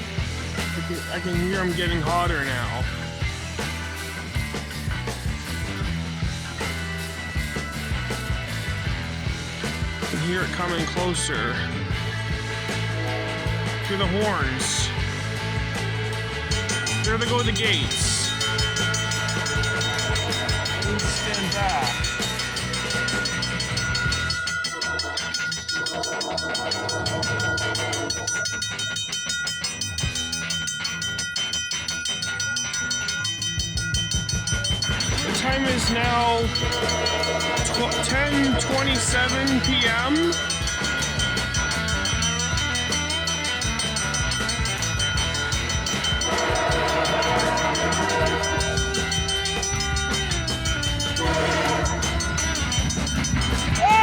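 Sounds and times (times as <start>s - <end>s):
level crossing bell ringing: 0.0s - 54.0s
locomotive air horn: 51.2s - 52.1s.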